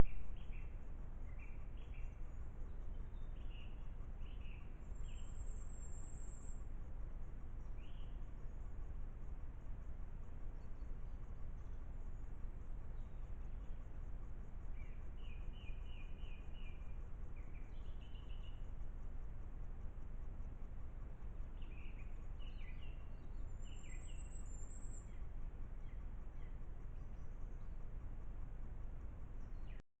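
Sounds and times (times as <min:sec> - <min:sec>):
bird chirps: 0:00.0 - 0:06.6, 0:07.7 - 0:08.2, 0:14.8 - 0:18.7, 0:21.5 - 0:27.6
low rumble and hiss: 0:00.0 - 0:29.8
steady low background noise: 0:00.0 - 0:29.8.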